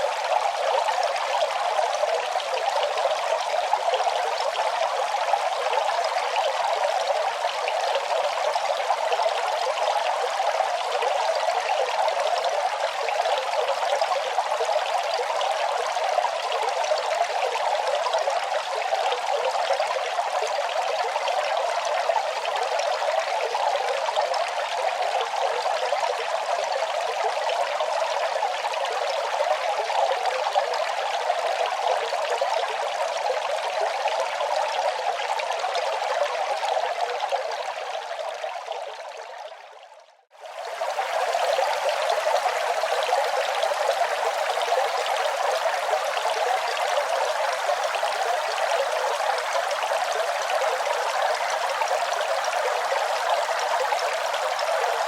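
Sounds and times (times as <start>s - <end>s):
running water flowing: 40.4s - 55.0s.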